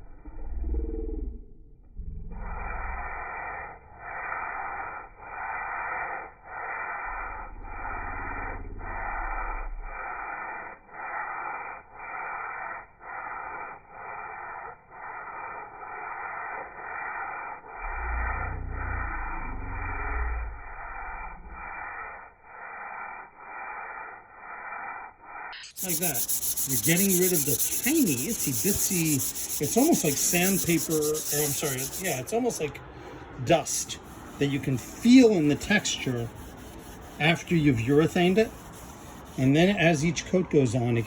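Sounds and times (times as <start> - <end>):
low rumble: 0.0 - 3.4, 7.1 - 10.0, 17.8 - 22.2
sandpaper rubbing on wood: 25.5 - 32.8, 33.4 - 41.0.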